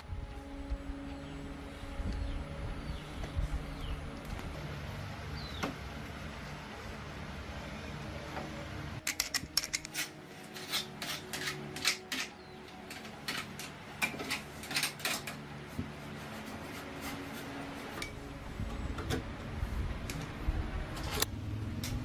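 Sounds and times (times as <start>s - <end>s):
metal tools clinking and scraping: 9.0s - 15.5s.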